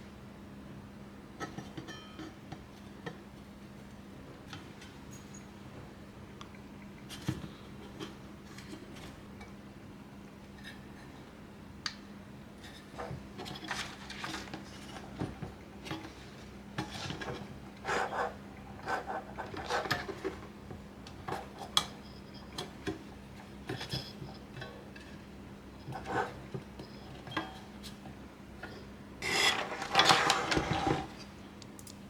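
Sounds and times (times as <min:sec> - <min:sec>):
small clicks and clinks of parts: 0:31.6 - 0:32.0.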